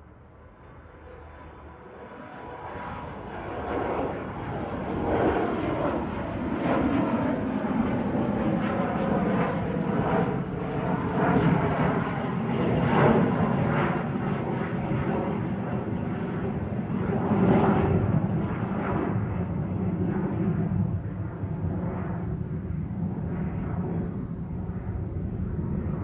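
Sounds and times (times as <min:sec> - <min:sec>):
jet engines at takeoff: 0:00.0 - 0:26.0.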